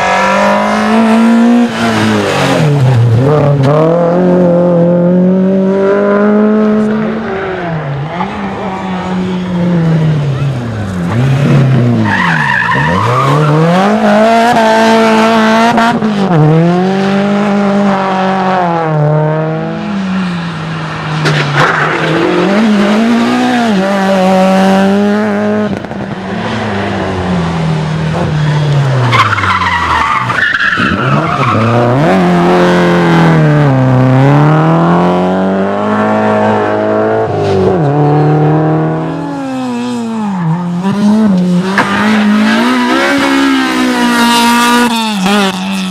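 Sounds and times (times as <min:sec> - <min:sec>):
rally car engines revving: 0:00.0 - 0:45.9
tyres skidding and squealing: 0:06.3 - 0:17.6, 0:19.9 - 0:34.8, 0:35.9 - 0:45.9.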